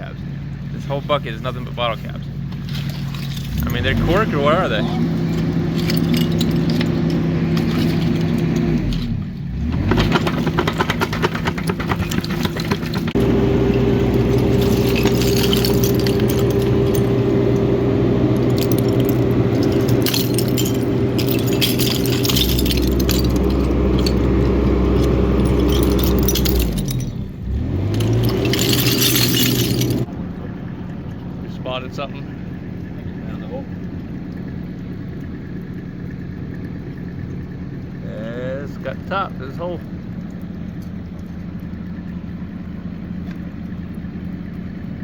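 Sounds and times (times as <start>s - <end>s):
excavator diesel engine: 0.0s - 39.8s
glass and debris clinking: 2.3s - 30.1s.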